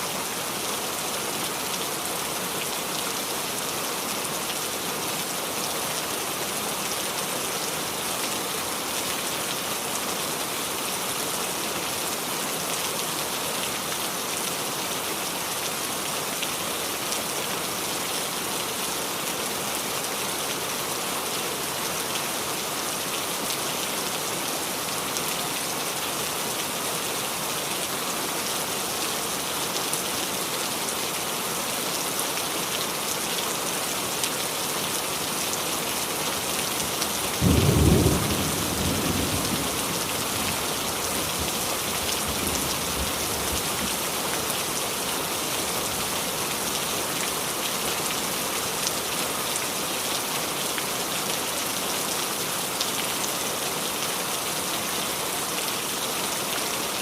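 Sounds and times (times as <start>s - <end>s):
rain falling on tree: 0.0s - 57.0s.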